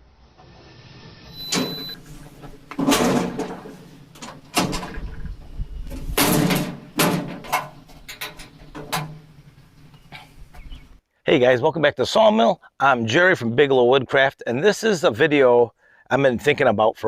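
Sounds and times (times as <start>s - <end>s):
metal parts knocking and clunking: 1.5s - 10.0s.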